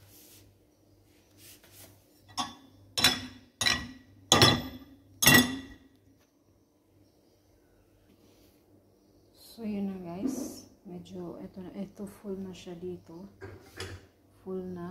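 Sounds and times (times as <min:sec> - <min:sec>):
dishes clinking: 0:02.3 - 0:05.8.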